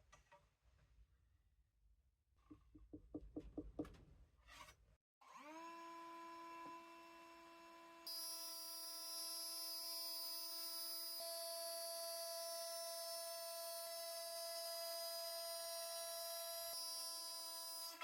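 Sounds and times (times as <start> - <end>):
router motor whine: 5.2 - 18.0.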